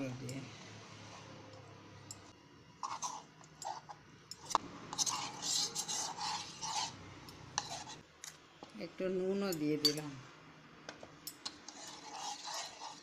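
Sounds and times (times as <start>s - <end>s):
spoon scraping in a bowl: 0.3s - 8.0s, 11.3s - 13.0s.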